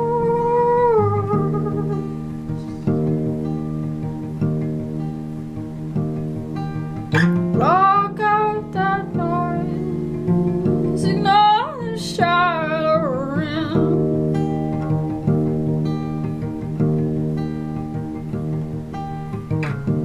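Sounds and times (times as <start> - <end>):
person singing wordless melody: 0.0 - 2.8, 7.6 - 14.0
acoustic guitar chords: 0.0 - 20.0.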